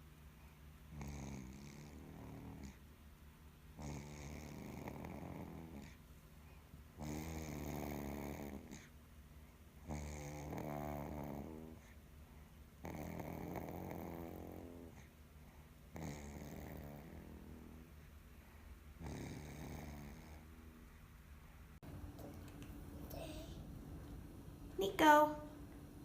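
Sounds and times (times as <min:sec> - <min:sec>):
rattling snores: 0:00.9 - 0:02.8, 0:03.8 - 0:06.0, 0:07.0 - 0:08.9, 0:09.8 - 0:12.0, 0:12.8 - 0:15.1, 0:15.9 - 0:17.9, 0:19.0 - 0:20.7.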